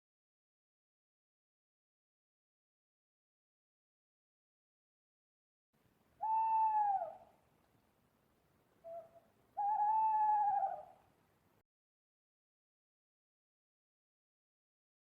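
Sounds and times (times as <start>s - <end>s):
owl hooting: 6.2s - 7.3s, 8.8s - 11.0s.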